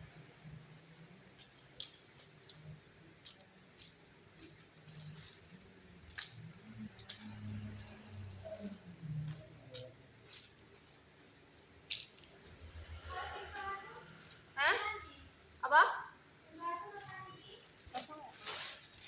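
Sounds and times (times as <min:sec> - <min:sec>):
faint low murmur: 0:00.0 - 0:14.6
packaging crinkling: 0:16.9 - 0:19.0.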